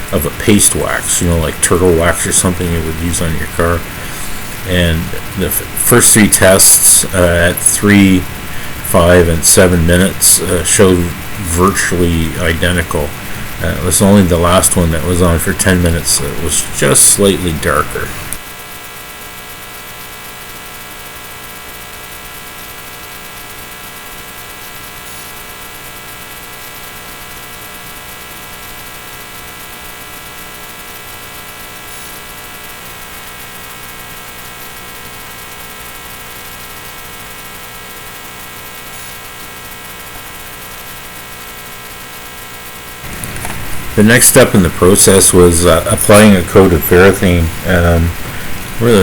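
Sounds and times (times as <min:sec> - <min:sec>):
faint hiss: 0:00.0 - 0:18.4, 0:42.9 - 0:49.0
electrical hum: 0:00.0 - 0:49.0.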